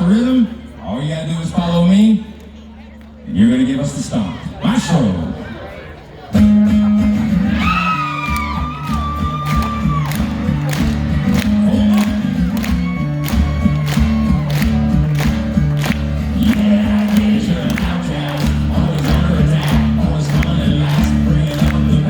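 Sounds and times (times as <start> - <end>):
acoustic guitar riff: 6.3 - 22.0
audience cheering: 7.5 - 22.0
audience clapping a beat: 8.3 - 22.0.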